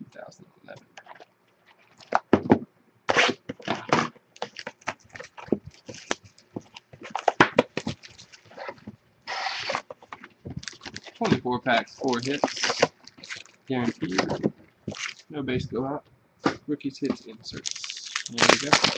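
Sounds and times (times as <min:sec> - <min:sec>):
plastic wrapper crinkling: 0:03.6 - 0:15.3, 0:17.0 - 0:18.9
wrapper ripping: 0:10.6 - 0:11.2, 0:11.8 - 0:14.2, 0:14.9 - 0:15.3, 0:17.1 - 0:18.9.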